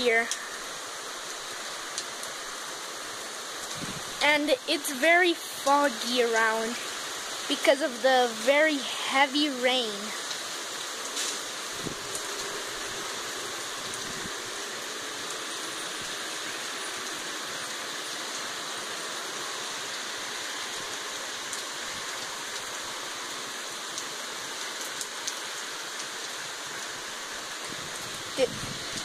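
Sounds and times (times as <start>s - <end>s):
heavy rain pouring: 0.0s - 29.0s
raindrop ticks: 0.2s - 0.5s, 1.3s - 2.4s, 21.5s - 26.9s.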